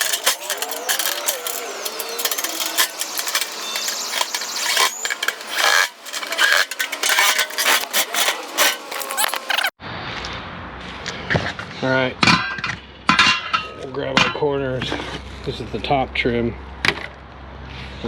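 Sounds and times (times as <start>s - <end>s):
metallic clinking of screws: 0.0s - 9.7s.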